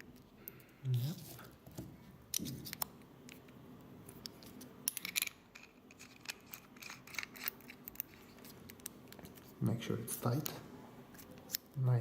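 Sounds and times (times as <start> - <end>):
small metal parts clicking: 4.2 - 9.4.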